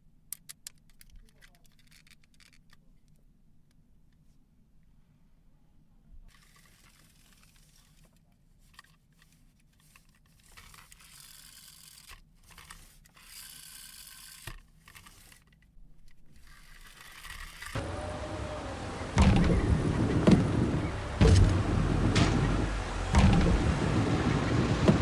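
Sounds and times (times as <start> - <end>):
packaging rustling and tearing: 6.3 - 17.8.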